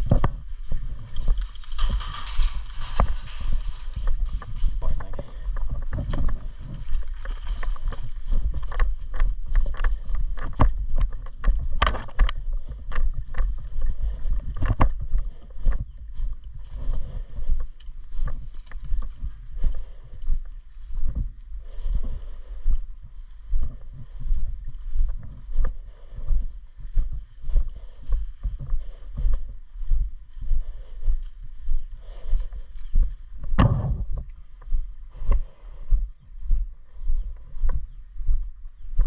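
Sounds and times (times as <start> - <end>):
sharp clicks and knocks: 0.0 - 13.5
gear rustling: 0.0 - 20.5
footsteps: 0.0 - 39.0
low rumble: 0.0 - 39.0.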